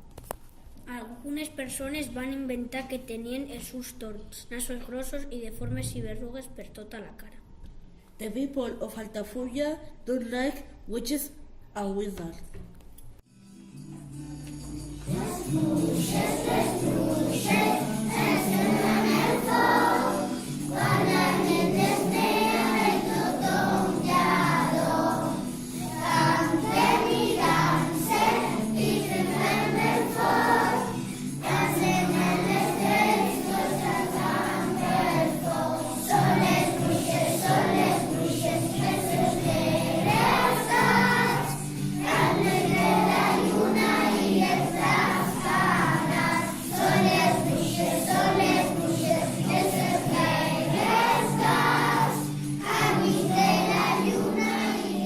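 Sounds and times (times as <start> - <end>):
jingling tambourine accompaniment: 13.4 - 55.0
group of voices singing: 14.4 - 55.0.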